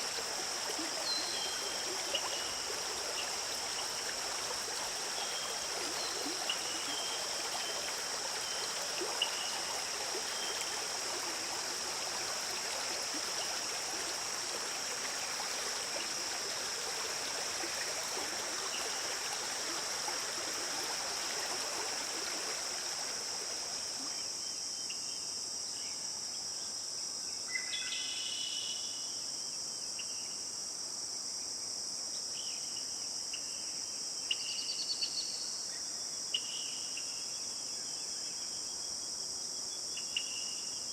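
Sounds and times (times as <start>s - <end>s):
stream flowing: 0.0s - 24.4s
insect drone: 0.0s - 40.9s.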